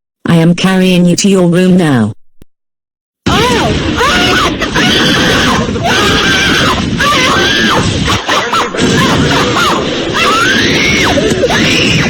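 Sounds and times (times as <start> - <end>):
person screaming and wailing: 3.3 - 12.0.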